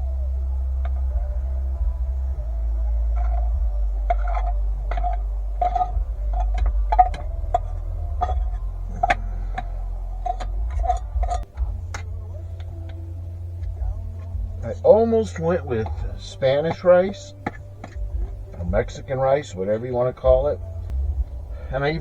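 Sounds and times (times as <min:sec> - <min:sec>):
steady low hum: 0:00.0 - 0:22.0
metal spoon clinking on pot: 0:03.2 - 0:19.8.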